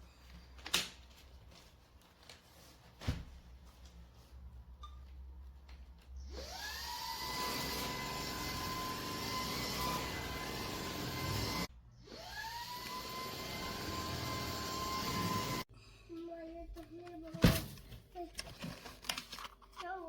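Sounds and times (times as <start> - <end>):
vacuum motor whining: 6.4 - 15.7.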